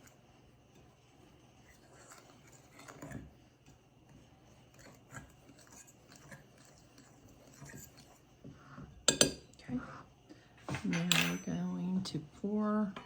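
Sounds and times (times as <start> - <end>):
fork stirring dry ingredients: 0.0 - 8.4
fork knocking against bowl: 9.1 - 9.4.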